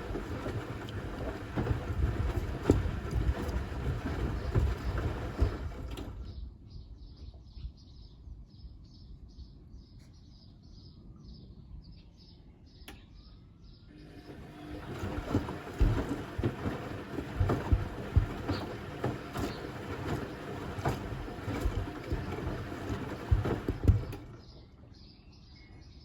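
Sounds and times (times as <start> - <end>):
heavy thumps in washing drum: 0.0 - 6.2, 14.2 - 24.4
washing machine high whine: 0.0 - 6.4, 13.9 - 24.7.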